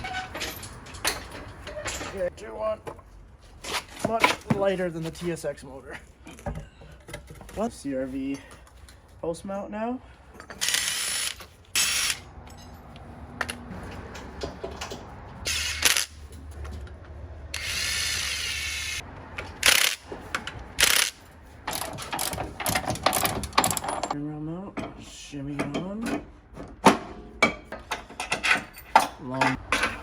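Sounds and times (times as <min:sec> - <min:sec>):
ratchet wrench clicking: 0:15.5 - 0:16.1, 0:19.6 - 0:20.0, 0:20.8 - 0:23.9.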